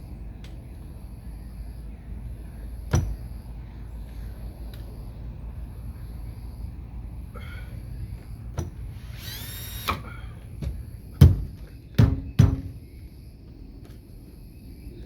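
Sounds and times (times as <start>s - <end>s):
heavy knocks: 10.6s - 12.8s.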